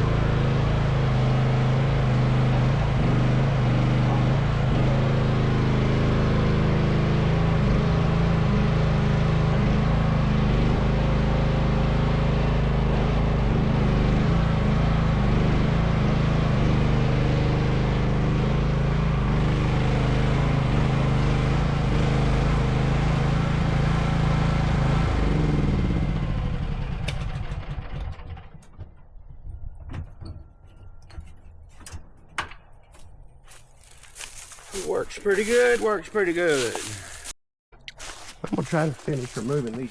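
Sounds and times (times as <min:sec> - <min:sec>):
excavator engine running: 0:12.5 - 0:28.5, 0:33.5 - 0:39.9.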